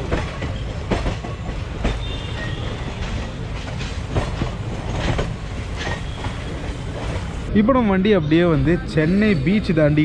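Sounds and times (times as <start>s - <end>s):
wheels clacking on rail joints: 0.0s - 7.5s
train rumbling: 0.0s - 10.0s.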